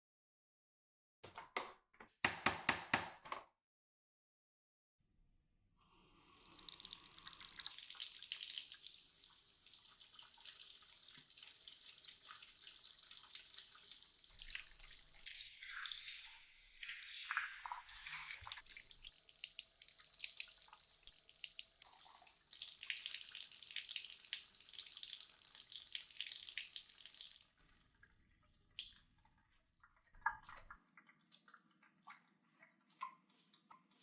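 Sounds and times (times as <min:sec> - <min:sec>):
tap water running into sink: 0:06.2 - 0:15.3, 0:18.4 - 0:27.6
water dripping: 0:06.2 - 0:34.0.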